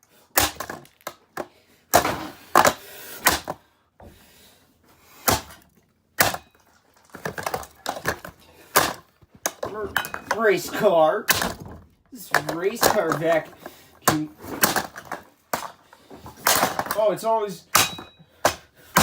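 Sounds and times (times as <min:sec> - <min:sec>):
hard objects knocking on plastic: 0:11.3 - 0:17.0.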